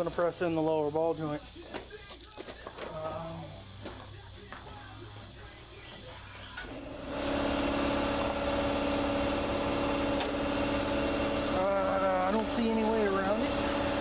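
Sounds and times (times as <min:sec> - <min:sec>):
machine motor humming: 0:02.9 - 0:14.0.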